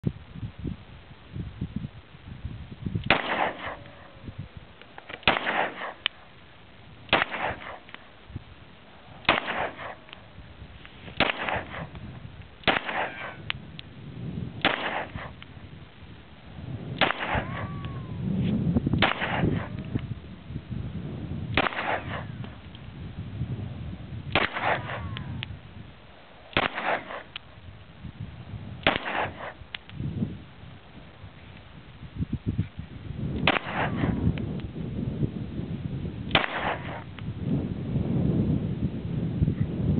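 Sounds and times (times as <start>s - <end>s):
pistol shots: 3.0s - 4.0s, 5.2s - 6.2s, 7.1s - 8.1s, 9.2s - 10.2s, 11.2s - 12.0s, 12.6s - 13.5s, 14.6s - 15.4s, 17.0s - 17.7s, 19.0s - 19.8s, 21.5s - 22.5s, 24.3s - 25.3s, 26.5s - 27.4s, 28.8s - 29.6s, 33.4s - 34.2s, 36.3s - 37.1s.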